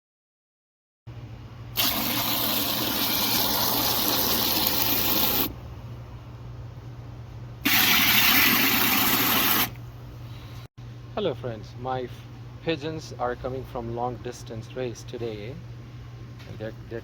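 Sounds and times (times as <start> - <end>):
water gushing: 1.8 - 5.5, 7.6 - 9.8.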